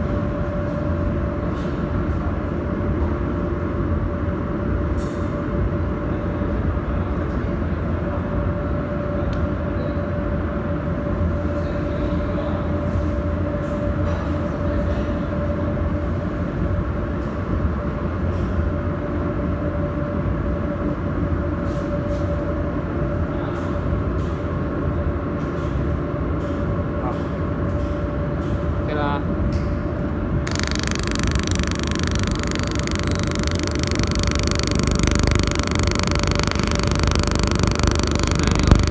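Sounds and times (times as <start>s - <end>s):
sharp clicks: 30.5s - 38.9s
welding machine humming: 30.5s - 38.9s.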